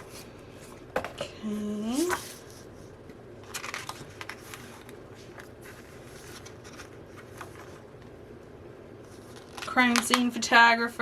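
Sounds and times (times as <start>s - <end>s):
paper booklets rustling: 1.8s - 2.8s, 3.4s - 8.0s, 9.0s - 10.2s.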